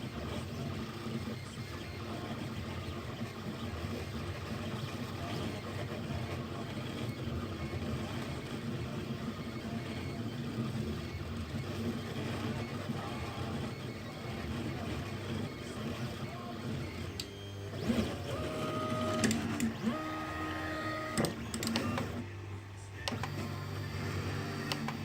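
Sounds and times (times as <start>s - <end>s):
stepper motors humming: 5.2s - 25.0s.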